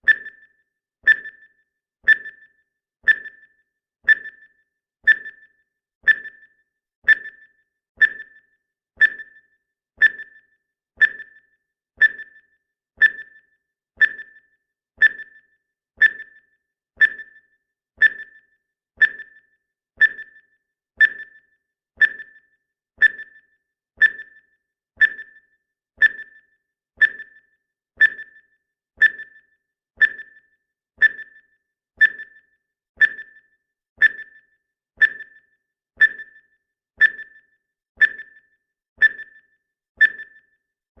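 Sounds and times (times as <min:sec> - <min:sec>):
clock ticking with high ping: 0:00.0 - 0:41.0.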